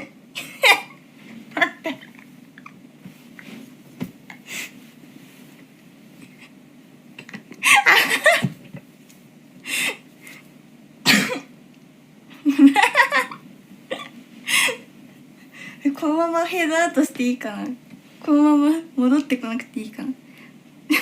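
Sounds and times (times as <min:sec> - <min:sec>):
woman coughing: 0:00.4 - 0:01.0, 0:11.0 - 0:11.5.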